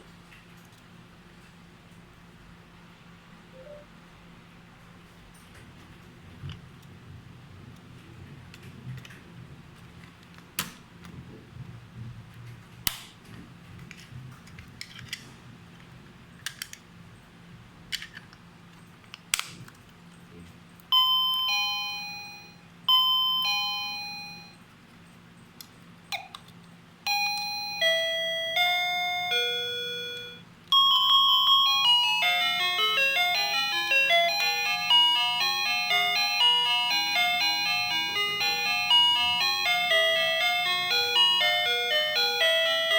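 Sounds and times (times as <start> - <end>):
electronic doorbell chime: 20.9 - 24.6, 27.1 - 42.9.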